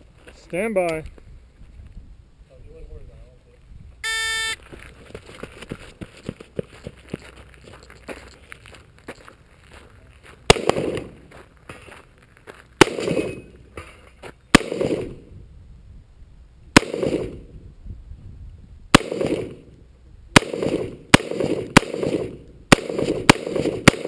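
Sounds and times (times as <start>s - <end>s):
gunshots with echo: 10.5s - 11.2s, 12.8s - 13.4s, 16.8s - 17.4s, 19.0s - 19.6s, 20.4s - 24.0s.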